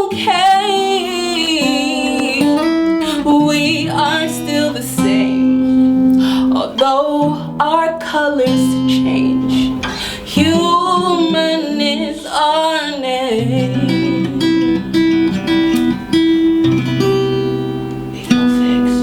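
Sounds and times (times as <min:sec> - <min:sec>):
wordless singing: 0:00.0 - 0:15.6, 0:18.1 - 0:19.0
acoustic guitar music: 0:00.0 - 0:19.0.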